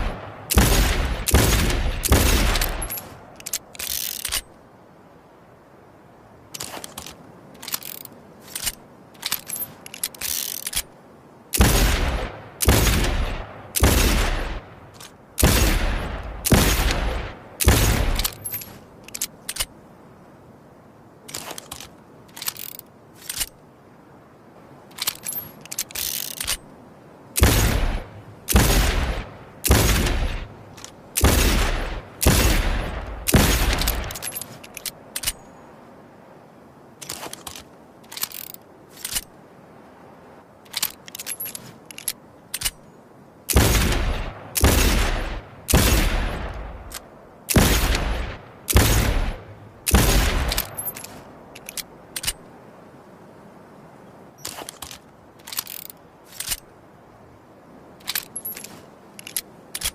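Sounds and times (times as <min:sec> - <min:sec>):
revolver gunshots with ringing tail: 0:00.0 - 0:03.1, 0:11.6 - 0:14.7, 0:15.4 - 0:18.4, 0:27.4 - 0:30.5, 0:31.2 - 0:34.2, 0:43.5 - 0:46.9, 0:47.5 - 0:50.9
metallic clicks and rattles: 0:02.0 - 0:04.5, 0:06.5 - 0:10.9, 0:17.6 - 0:19.7, 0:21.3 - 0:23.6, 0:24.9 - 0:26.7, 0:33.3 - 0:35.5, 0:37.0 - 0:39.3, 0:40.6 - 0:42.8, 0:49.9 - 0:52.5, 0:54.4 - 0:56.7, 0:58.0 - 0:59.9.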